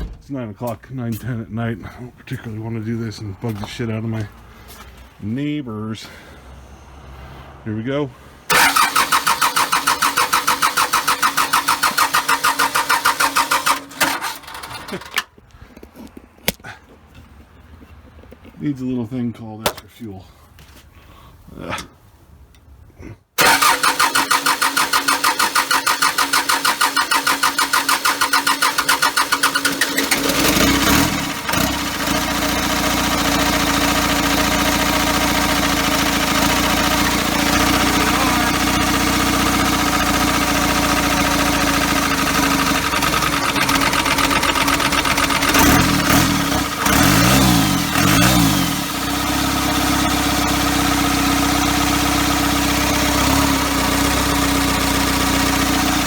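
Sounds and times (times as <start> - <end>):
diesel engine idling and revving: 1.1 - 16.1, 23.4 - 56.0
starter motor cranking: 8.5 - 15.3, 23.4 - 49.3.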